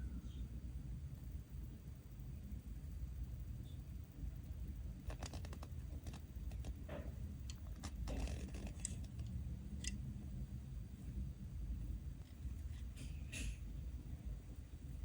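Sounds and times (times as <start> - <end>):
steady low hum: 0.0 - 15.0
plastic packaging clicks and scrapes: 5.1 - 6.9, 7.6 - 9.9.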